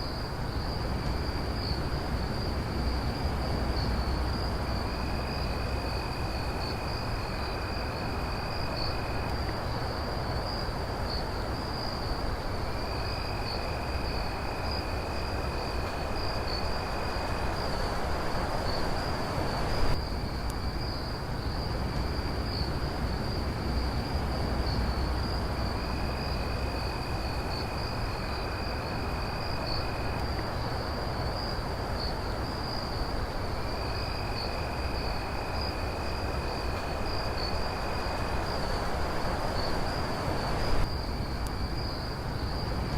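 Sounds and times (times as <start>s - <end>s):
crickets chirping high trill: 0.0s - 42.9s
lower insect trill: 0.0s - 42.9s
steady background hiss: 0.0s - 42.9s.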